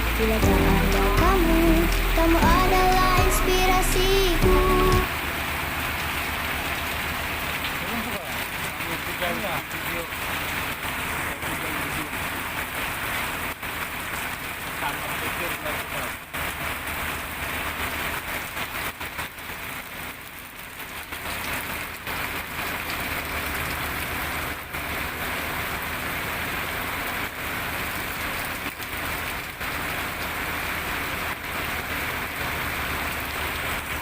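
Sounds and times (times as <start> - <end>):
heavy rain on hard surfaces: 0.0 - 34.0.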